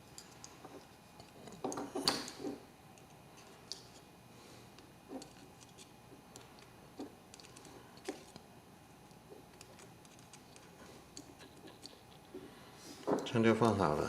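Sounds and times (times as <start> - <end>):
small metal parts clicking: 7.3 - 8.4.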